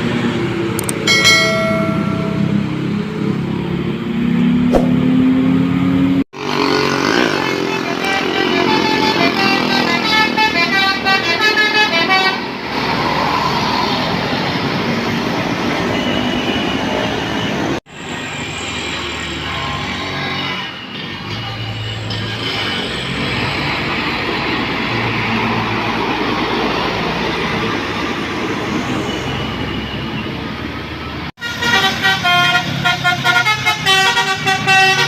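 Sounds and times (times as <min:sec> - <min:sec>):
bus engine: 0:00.0 - 0:35.0
street noise: 0:00.0 - 0:35.0
bus melody horn: 0:07.8 - 0:12.5, 0:31.4 - 0:35.0.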